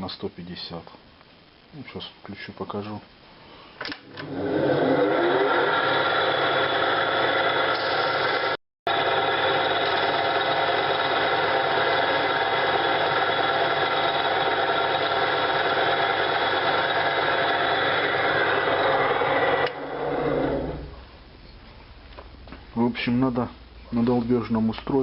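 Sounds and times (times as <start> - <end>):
wood lathe motor humming: 4.2 - 21.0.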